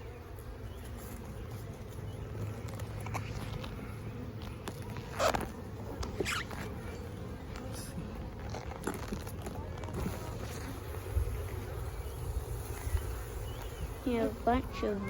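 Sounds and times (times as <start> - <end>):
honeybees humming: 0.0 - 15.0
short scratchy rasps: 2.6 - 6.9.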